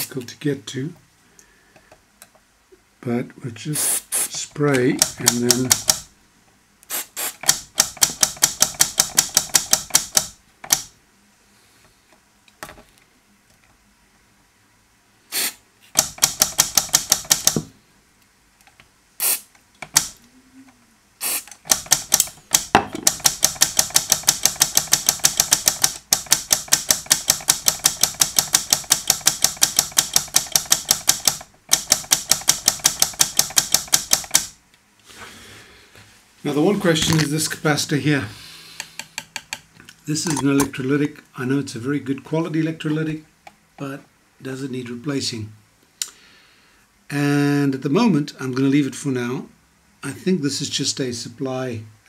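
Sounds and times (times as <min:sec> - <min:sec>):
radio switch clicking rapidly: 0:04.7 - 0:06.1, 0:07.4 - 0:10.9, 0:16.0 - 0:17.6, 0:19.8 - 0:20.2, 0:21.5 - 0:34.5.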